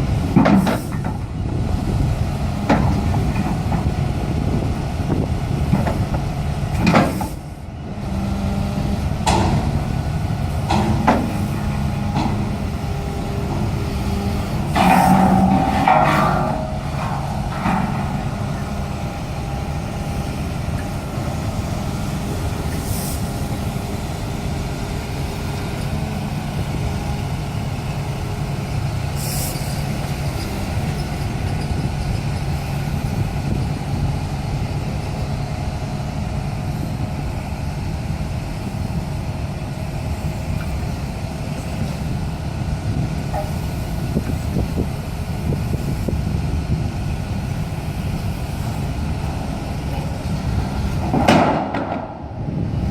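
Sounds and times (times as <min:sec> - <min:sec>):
vibratory pile driver droning: 0:08.0 - 0:22.8.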